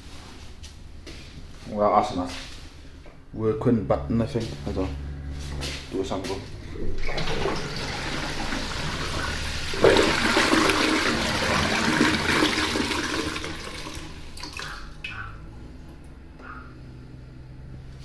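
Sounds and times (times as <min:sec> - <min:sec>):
toilet flushing water rush: 0:06.8 - 0:15.0.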